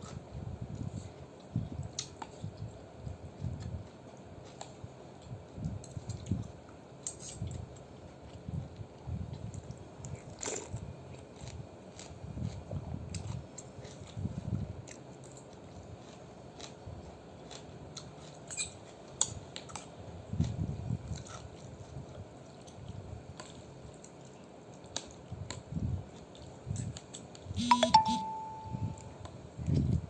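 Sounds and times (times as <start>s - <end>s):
person chewing noodles: 7.3s - 25.2s.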